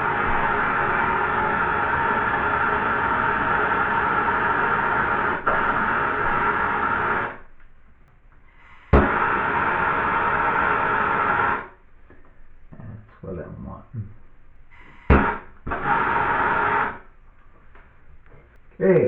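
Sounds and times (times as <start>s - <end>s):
gas torch hissing: 0.0s - 7.6s, 8.4s - 11.9s, 14.6s - 17.2s.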